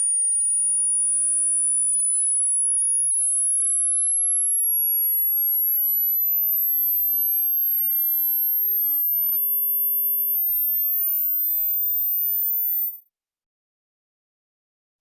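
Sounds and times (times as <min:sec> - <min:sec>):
high-pitched sine tone gliding upward: 0:05.7 - 0:13.0.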